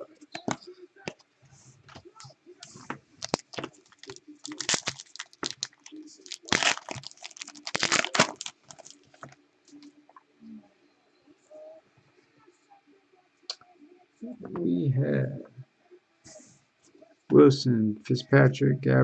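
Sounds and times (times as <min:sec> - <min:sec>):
cards being handled: 0:01.9 - 0:09.8
wrapper tearing and crinkling: 0:03.2 - 0:09.4.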